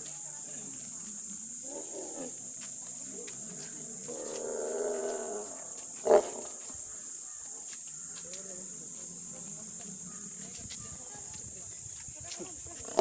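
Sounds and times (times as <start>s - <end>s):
animal calling: 4.1s - 7.0s.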